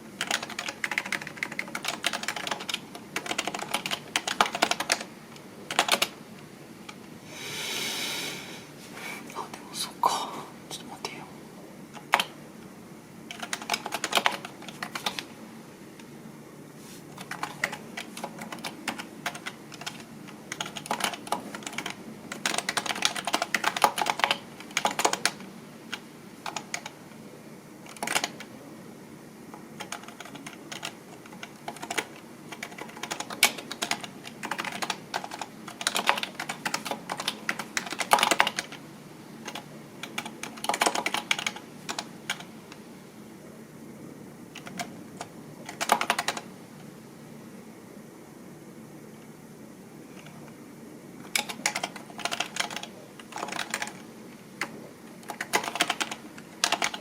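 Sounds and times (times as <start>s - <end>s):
computer keyboard typing: 0.2s - 5.1s, 5.7s - 6.2s, 11.9s - 12.4s, 13.3s - 15.3s, 17.1s - 27.0s, 27.8s - 28.5s, 29.6s - 38.8s, 39.4s - 42.6s, 44.5s - 46.5s, 51.2s - 57.0s.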